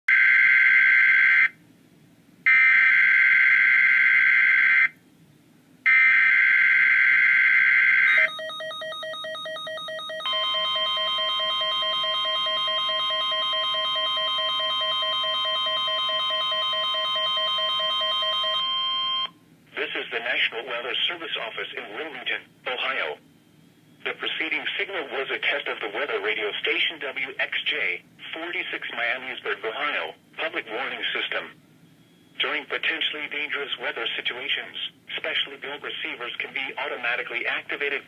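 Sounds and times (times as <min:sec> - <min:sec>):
steady warning alarm tone: 0:00.1 - 0:01.6, 0:02.5 - 0:04.9, 0:05.9 - 0:19.4
pulsing beep: 0:08.1 - 0:19.3.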